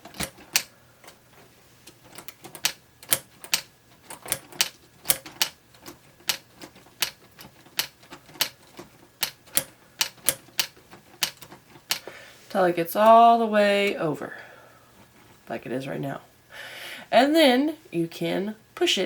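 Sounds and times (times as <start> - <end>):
plastic typewriter keys tapping: 0.0 - 1.2, 1.9 - 12.1.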